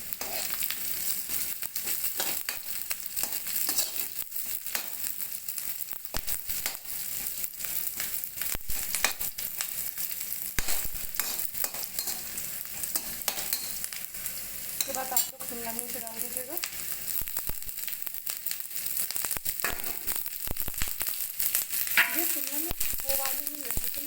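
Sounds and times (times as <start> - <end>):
spoon stirring in a pan: 0.0 - 16.9
onions sizzling in hot oil: 0.0 - 24.0.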